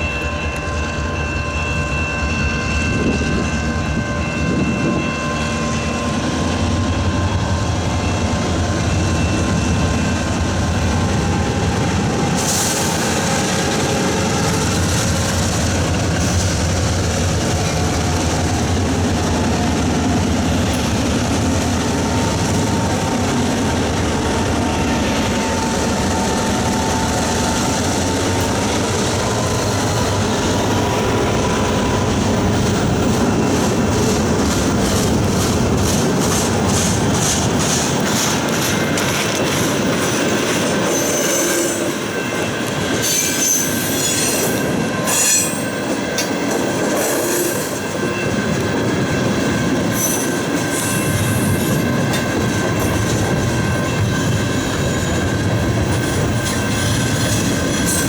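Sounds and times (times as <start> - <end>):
train wheels clacking over rail joints: 32.6 - 47.9
high-pitched wheel squeal: 43.0 - 45.8.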